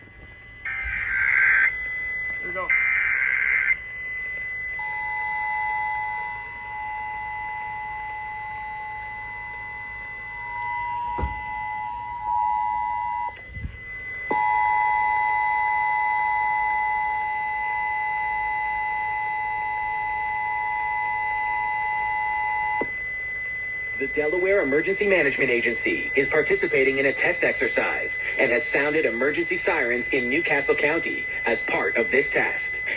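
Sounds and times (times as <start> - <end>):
thin high steady tone: 0.5 - 16.7
two-tone alert signal: 0.7 - 8.0
faint thumps: 11.0 - 11.6.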